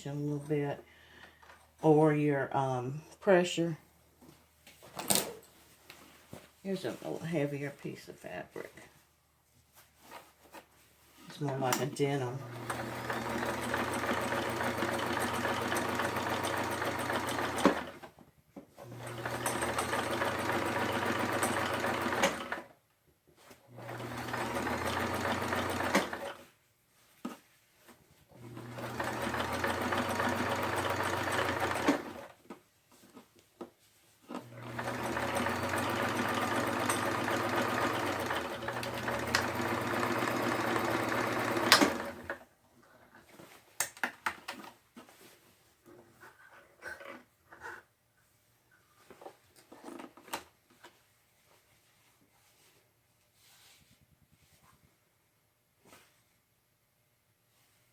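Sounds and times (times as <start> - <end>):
sewing machine stitching: 12.4 - 18.1, 18.8 - 22.7, 23.7 - 26.4, 28.3 - 32.4, 34.3 - 42.4.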